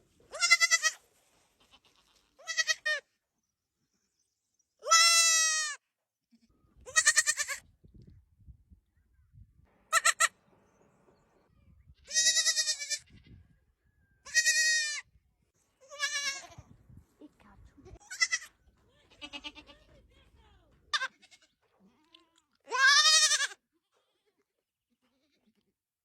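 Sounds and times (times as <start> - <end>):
baby goats bleating: 0.3 - 1.0, 1.6 - 3.1, 4.8 - 7.6, 9.9 - 10.4, 12.0 - 13.4, 14.3 - 15.1, 15.8 - 16.7, 18.0 - 19.9, 20.9 - 23.6.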